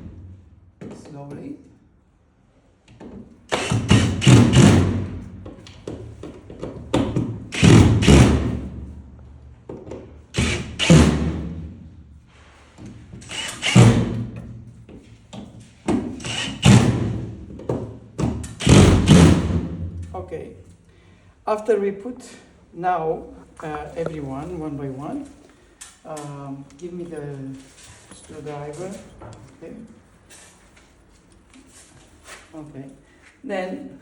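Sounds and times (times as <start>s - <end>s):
power drill driving screws: 3.5s - 5.0s, 7.5s - 8.5s, 10.4s - 11.2s, 13.2s - 14.2s, 16.2s - 17.1s, 18.4s - 19.4s.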